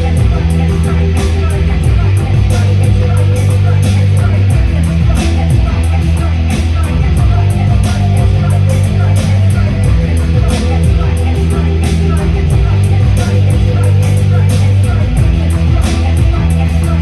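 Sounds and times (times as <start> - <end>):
distorted electric guitar: 0.0 - 17.0
loud bass line: 0.0 - 17.0.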